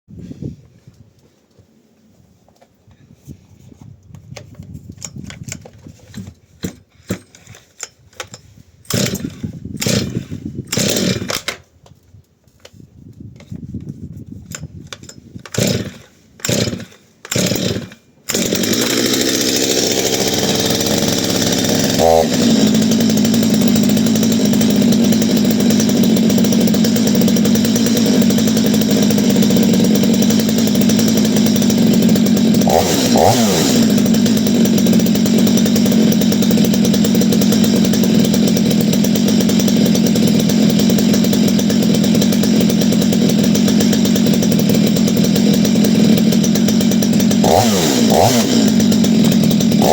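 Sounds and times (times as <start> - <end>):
chainsaw starting pulls: 4.5 - 11.7, 14.4 - 49.9
chainsaw engine running: 8.9 - 11.6, 15.4 - 49.9.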